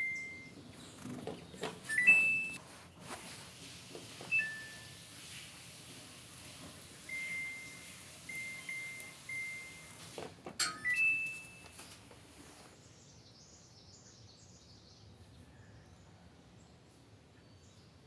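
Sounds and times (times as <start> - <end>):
short high beeps: 0.0 - 0.5, 1.9 - 2.6, 4.3 - 4.9, 7.1 - 9.9.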